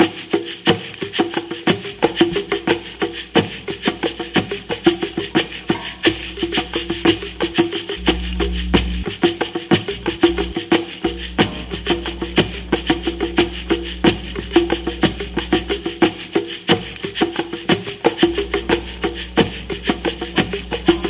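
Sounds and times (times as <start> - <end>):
fast percussion strikes: 0.0 - 21.0
low drone: 8.0 - 9.0, 9.9 - 15.6
sustained mid-pitched tone: 8.0 - 9.0, 9.9 - 14.3.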